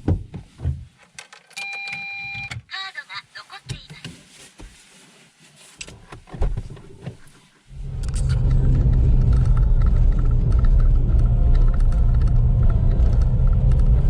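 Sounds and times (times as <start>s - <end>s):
low car rumble: 7.7s - 14.0s.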